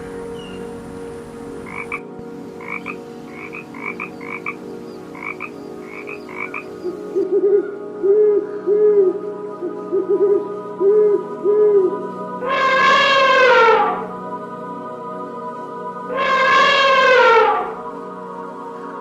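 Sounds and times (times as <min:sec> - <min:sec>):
croak-like animal calls: 0:01.7 - 0:02.0, 0:02.6 - 0:08.2, 0:12.4 - 0:14.2, 0:16.1 - 0:17.9
low hooting calls: 0:10.0 - 0:14.2, 0:16.1 - 0:17.9
long falling animal call: 0:10.8 - 0:14.2, 0:16.1 - 0:18.0.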